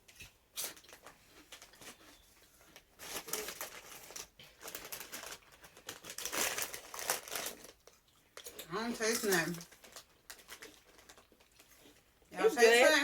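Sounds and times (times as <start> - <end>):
crunchy snacks being chewed: 2.8 - 12.3.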